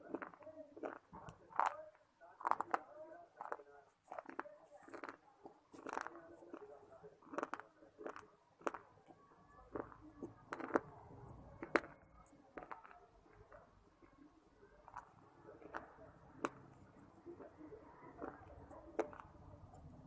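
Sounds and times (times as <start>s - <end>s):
crunchy biting and chewing: 0.0s - 9.0s, 9.7s - 10.9s, 14.8s - 19.4s.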